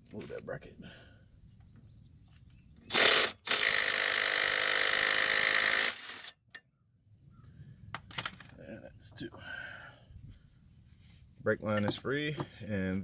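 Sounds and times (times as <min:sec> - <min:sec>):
impact wrench running: 0:02.9 - 0:06.4.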